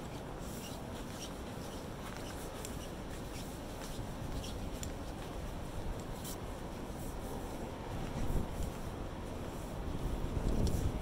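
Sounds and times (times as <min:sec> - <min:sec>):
low city rumble: 0:00.0 - 0:11.0
faint light ticks: 0:02.1 - 0:02.9, 0:03.8 - 0:06.2, 0:10.4 - 0:10.9.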